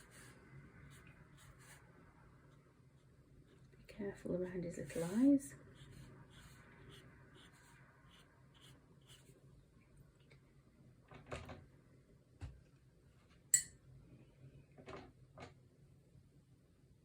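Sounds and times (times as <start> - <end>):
brush scratching on paper: 4.8 - 9.4.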